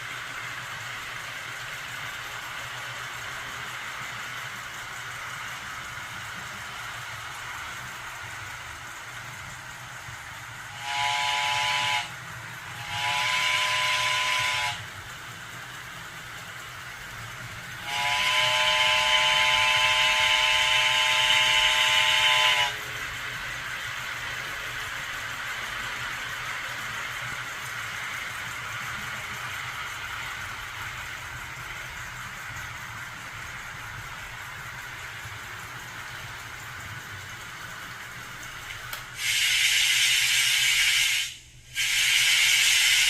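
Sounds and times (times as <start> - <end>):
steady steam hiss: 0.0 - 43.0
steam locomotive whistle blasts: 10.6 - 14.9, 17.7 - 22.9, 39.2 - 43.0.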